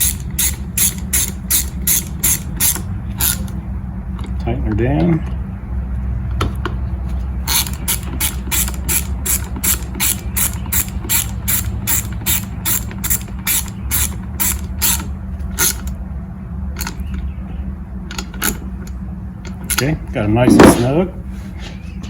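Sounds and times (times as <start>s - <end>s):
hand ratchet clicking: 0.0s - 3.5s, 7.5s - 15.9s.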